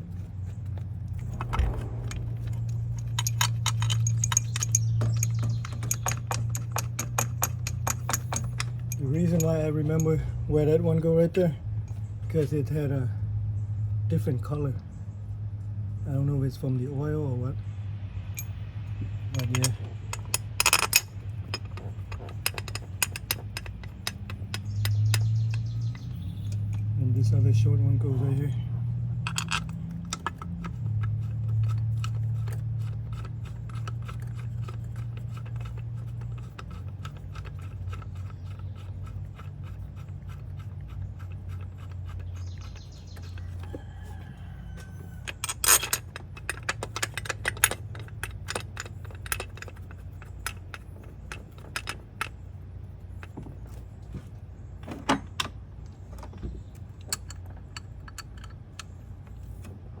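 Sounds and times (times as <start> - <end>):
steady low hum: 0.0 - 44.0
metal tools and bolts clinking: 0.5 - 10.4, 18.3 - 28.5, 29.2 - 53.9, 56.2 - 59.8.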